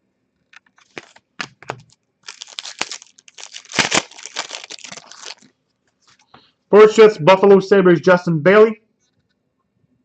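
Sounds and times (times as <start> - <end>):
packaging crinkling and rustling: 0.5 - 6.2
card packaging clicks: 0.6 - 5.5.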